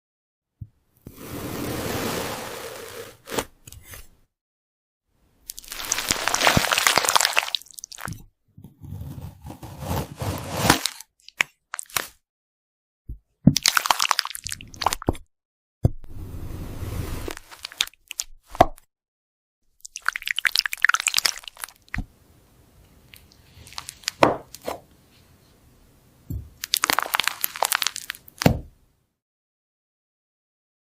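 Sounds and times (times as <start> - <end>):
brittle crunching and crackling: 5.5 - 8.2, 20.0 - 22.0, 23.2 - 24.2, 26.6 - 28.5.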